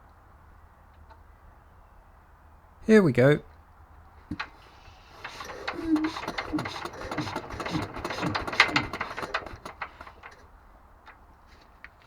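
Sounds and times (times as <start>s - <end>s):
engine turned over by hand: 4.3s - 11.2s.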